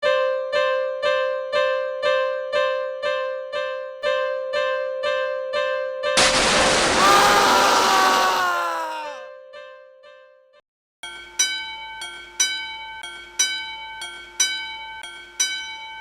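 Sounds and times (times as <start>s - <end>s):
loud splash and rushing water: 6.2s - 9.2s.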